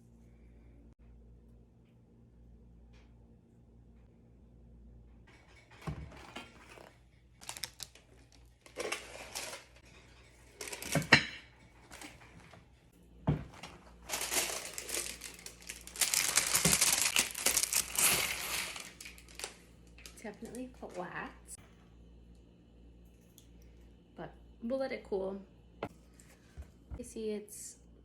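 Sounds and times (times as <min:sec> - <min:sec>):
paper crinkling and rustling: 0:06.1 - 0:12.6, 0:13.3 - 0:21.0.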